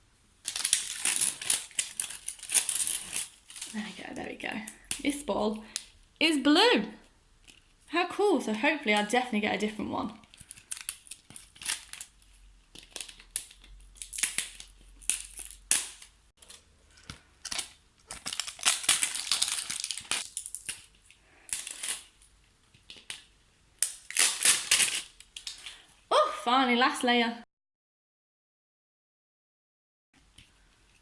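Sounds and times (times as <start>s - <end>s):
plastic wrapping crackling: 0.4s - 6.0s, 8.9s - 25.9s.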